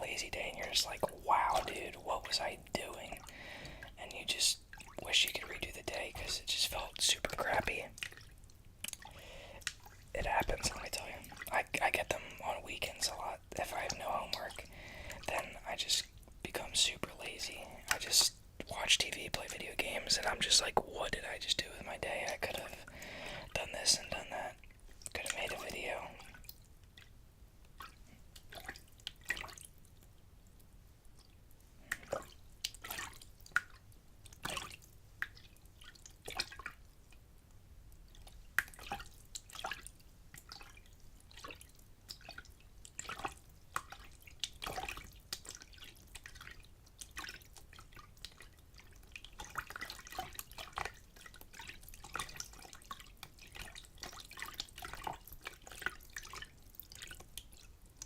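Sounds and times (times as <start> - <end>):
water dripping: 0.0 - 58.0
water splashing in a bin: 27.8 - 29.8, 31.2 - 37.1, 38.1 - 58.0.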